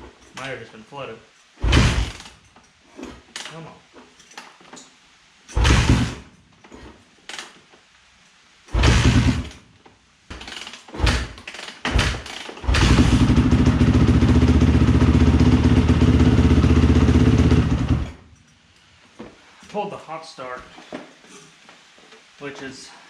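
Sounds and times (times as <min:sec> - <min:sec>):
kick-start thumps: 0:01.6 - 0:02.3, 0:05.6 - 0:06.3, 0:08.7 - 0:09.5
dirt bike engine running: 0:12.0 - 0:18.2.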